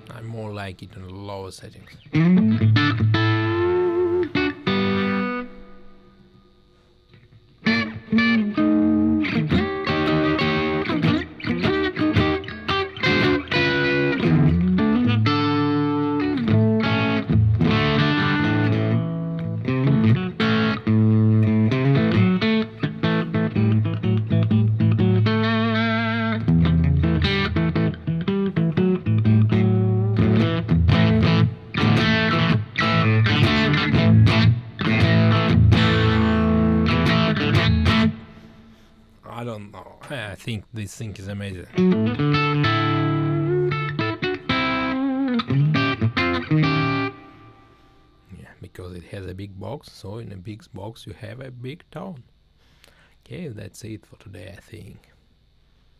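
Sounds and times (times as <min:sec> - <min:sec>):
electric guitar with vibe effect: 0:01.9 - 0:39.2, 0:41.6 - 0:48.4.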